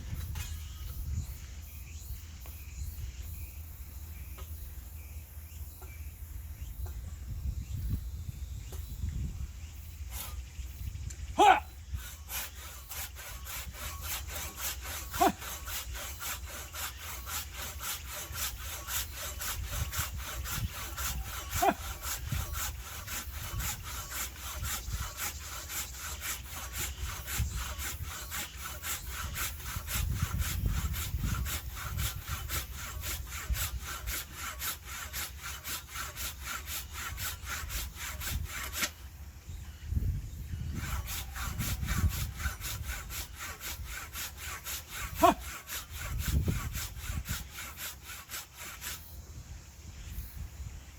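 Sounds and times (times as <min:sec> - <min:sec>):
hand saw cutting wood: 0:10.0 - 0:10.6, 0:11.4 - 0:39.1, 0:40.7 - 0:49.2.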